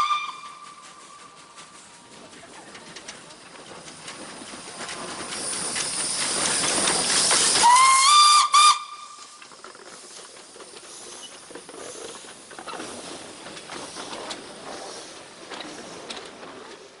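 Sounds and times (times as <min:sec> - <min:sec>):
train whistle blast: 0:00.0 - 0:01.4, 0:07.6 - 0:09.4
passing train noise: 0:00.0 - 0:17.0
rail noise with clicks: 0:00.0 - 0:17.0.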